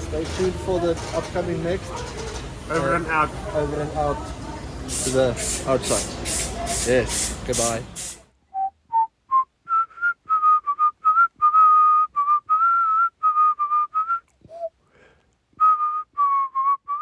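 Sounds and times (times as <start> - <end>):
person whistling a tune: 8.5 - 14.8, 15.6 - 17.0.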